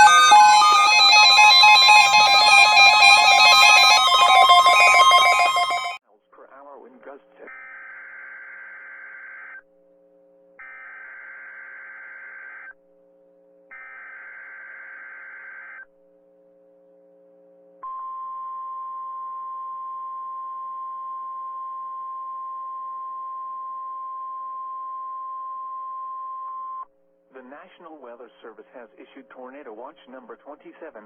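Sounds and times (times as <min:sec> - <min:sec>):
digital data screech bursts: 0:00.0 - 0:06.0
steady warning alarm tone: 0:00.0 - 0:06.0.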